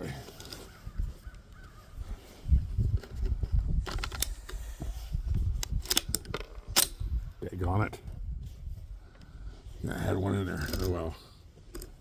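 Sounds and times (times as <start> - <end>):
rifle action clicking: 3.9 - 4.6, 5.6 - 7.1.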